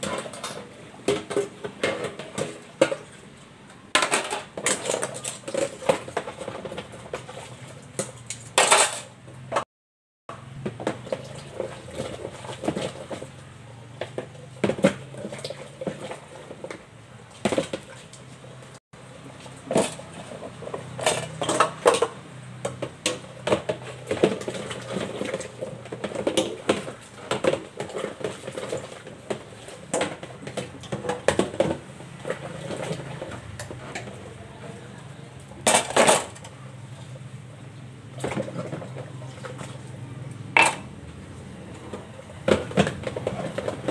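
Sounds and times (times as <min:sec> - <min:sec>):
dishes and cutlery clattering: 0:40.6 - 0:40.9.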